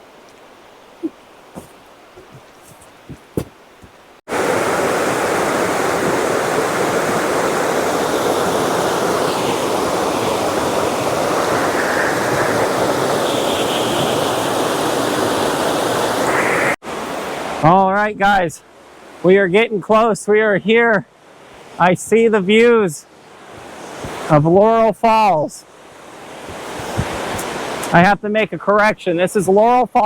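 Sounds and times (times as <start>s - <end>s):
waterfall rushing water: 4.3s - 17.6s.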